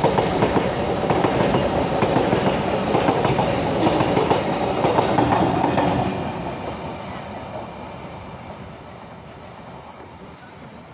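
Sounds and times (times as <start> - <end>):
train wagons rattling over rail joints: 0.0 - 7.7.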